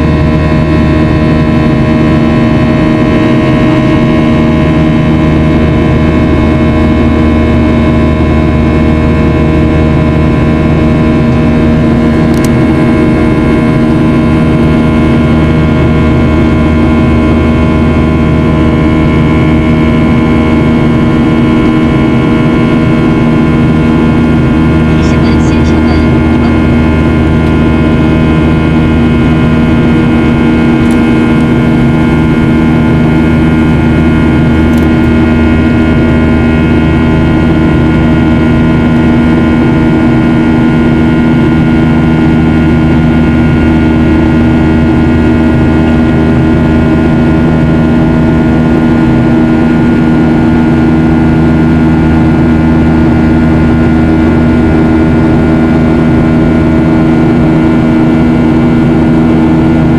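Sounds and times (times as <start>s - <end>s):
jet engine roar in cabin: 0.0s - 59.9s
whining tones: 21.8s - 36.6s.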